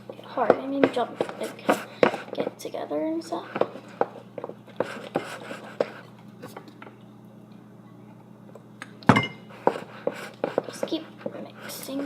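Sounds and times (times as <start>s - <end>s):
utensil scraping bowl: 0.4s - 2.6s, 3.3s - 6.1s, 9.5s - 12.0s.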